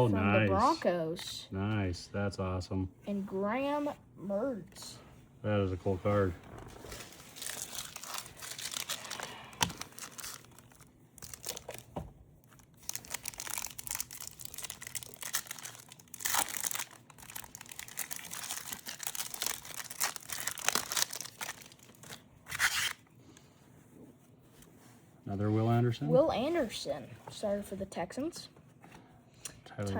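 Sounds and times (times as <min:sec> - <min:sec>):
wrapper crinkling and tearing: 0:06.5 - 0:23.0.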